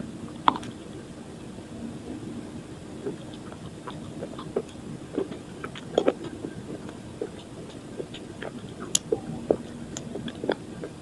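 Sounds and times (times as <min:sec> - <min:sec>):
crunching and chewing: 0:00.3 - 0:00.8, 0:03.0 - 0:11.0.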